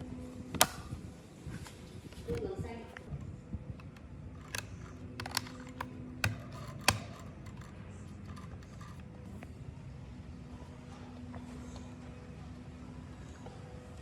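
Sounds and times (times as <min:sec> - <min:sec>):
sharp small clicks and taps: 0:03.8 - 0:09.1.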